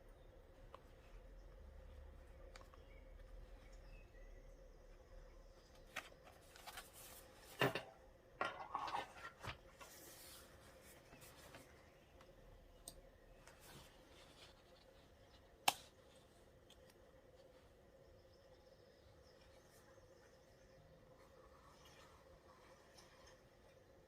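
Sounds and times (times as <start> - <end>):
notebook being handled: 5.7 - 7.8.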